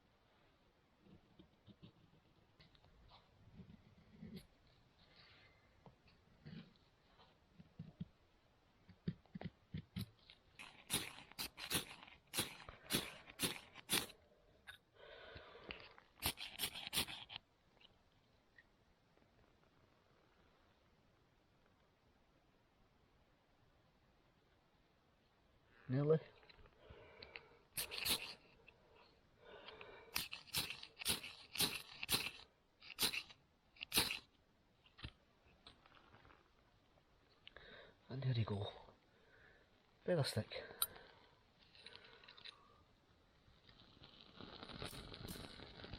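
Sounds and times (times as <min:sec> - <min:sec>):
knife scraping wooden stick: 0:10.6 - 0:14.2, 0:16.2 - 0:17.4, 0:27.8 - 0:28.6, 0:30.1 - 0:34.3
knife scraping wood: 0:16.3 - 0:17.4.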